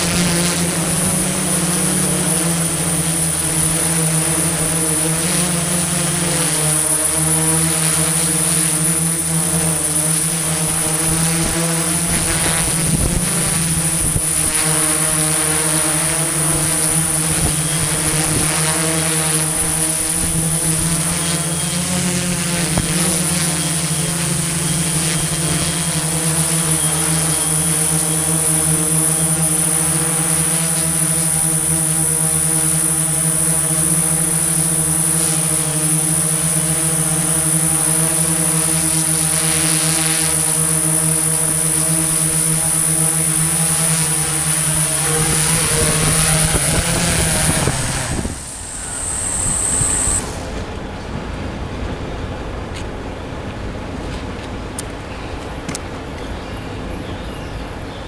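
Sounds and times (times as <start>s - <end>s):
high steady whine: 0.0s - 51.3s
machinery engine humming: 41.2s - 51.6s.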